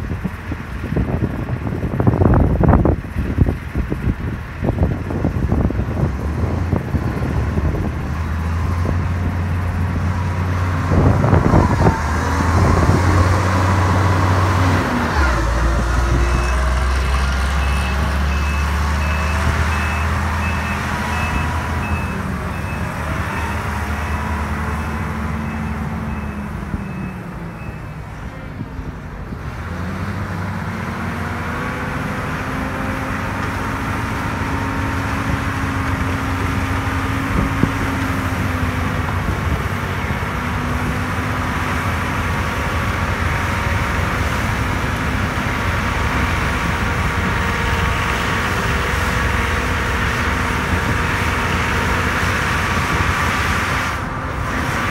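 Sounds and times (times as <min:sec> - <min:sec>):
heavy diesel engines under load: 0:00.0 - 0:54.9
reversing beeper: 0:15.7 - 0:16.8, 0:17.6 - 0:28.0.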